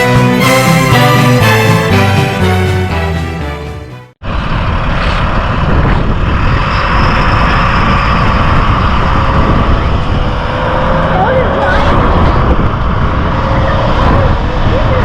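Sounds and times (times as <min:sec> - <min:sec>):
moving vehicle road noise: 0:04.2 - 0:15.0.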